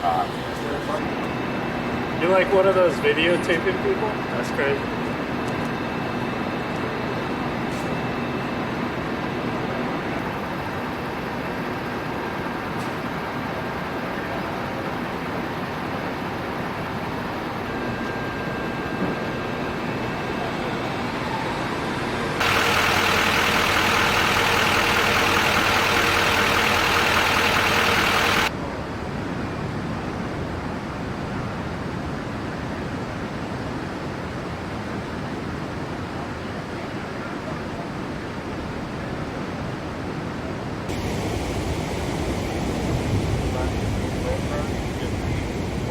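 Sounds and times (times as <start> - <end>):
idling vehicle engines: 0.0 - 28.5, 40.9 - 45.9.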